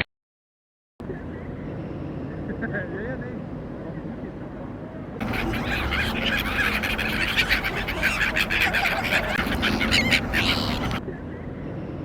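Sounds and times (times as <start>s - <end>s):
waterbirds honking and squawking: 5.2s - 11.0s.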